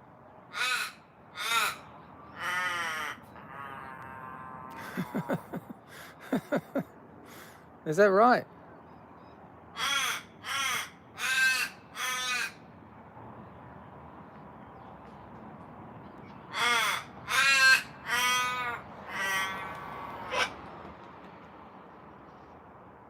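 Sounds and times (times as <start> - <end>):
raven cawing: 0.5 - 6.5, 9.7 - 12.7, 16.5 - 20.6.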